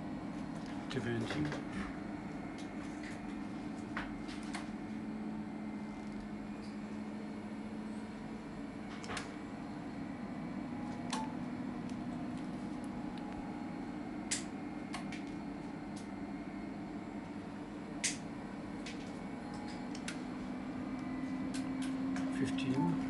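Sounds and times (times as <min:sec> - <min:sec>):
amplifier low hum: 0:00.0 - 0:23.0
sharp clicks: 0:14.3 - 0:15.3, 0:18.0 - 0:18.2.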